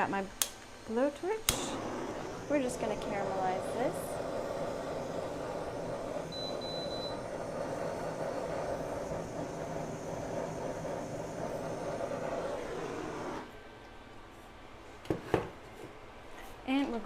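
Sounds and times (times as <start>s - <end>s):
blowtorch flame rushing: 1.4s - 13.5s.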